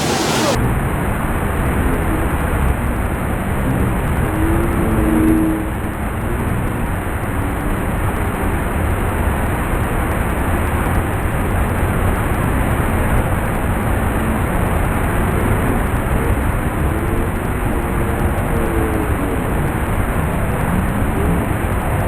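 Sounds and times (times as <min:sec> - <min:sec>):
waterfall rushing: 0:00.0 - 0:04.1.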